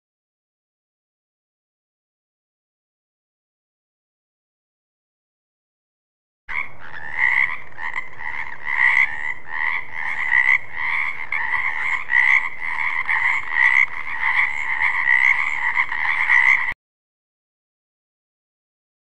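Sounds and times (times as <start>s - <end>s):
frogs croaking in chorus: 6.5s - 16.8s.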